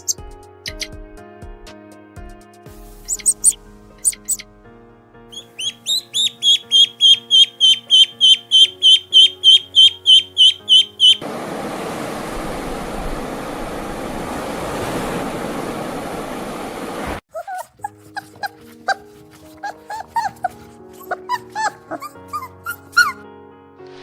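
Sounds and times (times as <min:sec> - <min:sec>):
high falling chirps: 0:00.0 - 0:01.0, 0:03.1 - 0:04.4, 0:05.3 - 0:11.2
background music: 0:00.0 - 0:11.2, 0:17.7 - 0:24.0
steady rushing noise: 0:11.2 - 0:17.2.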